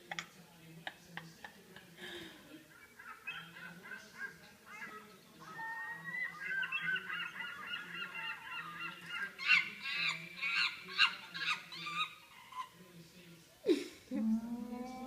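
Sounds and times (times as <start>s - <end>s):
flock of birds calling: 2.7s - 12.8s.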